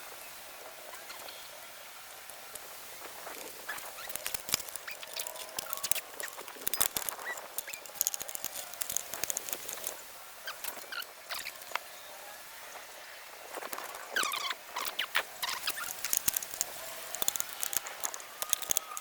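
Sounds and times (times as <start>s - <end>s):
bike parts and tools clicking: 2.5s - 11.9s, 13.7s - 19.0s
short squeaks: 3.5s - 11.8s, 14.1s - 19.0s.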